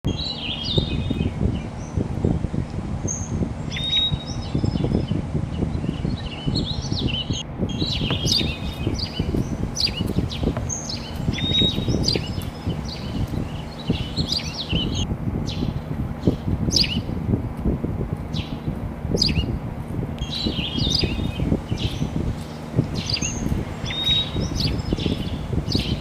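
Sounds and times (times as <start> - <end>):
small birds chirping: 0.0 - 26.0
low uneven rumble: 0.1 - 26.0.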